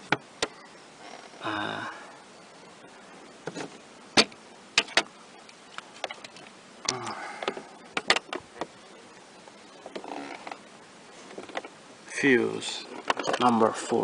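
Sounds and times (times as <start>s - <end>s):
hard parts clicking and knocking: 3.5s - 5.1s, 6.0s - 8.7s, 12.9s - 13.6s.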